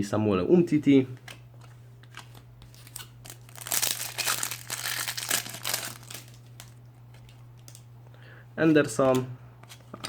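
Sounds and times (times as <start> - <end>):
steady low hum: 0.0 - 10.0
foil wrapper crinkling: 2.1 - 7.8.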